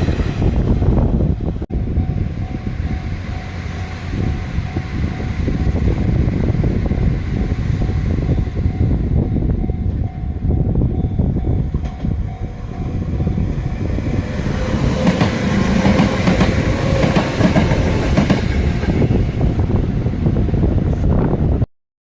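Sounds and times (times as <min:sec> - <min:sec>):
train rumbling past: 0:00.0 - 0:21.7
train wheels clacking over rail joints: 0:14.6 - 0:19.2.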